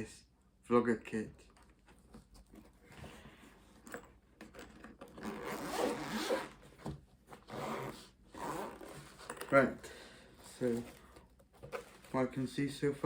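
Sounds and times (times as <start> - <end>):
zipper being pulled open: 4.8 - 6.6, 7.4 - 9.5.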